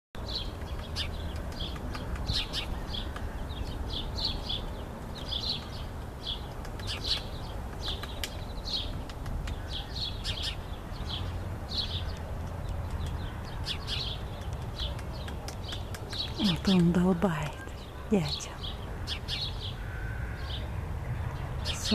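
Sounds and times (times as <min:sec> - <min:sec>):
small birds chirping: 0:00.2 - 0:21.9
woodpecker pecking at wood: 0:00.4 - 0:03.7, 0:05.0 - 0:09.8, 0:12.0 - 0:17.7.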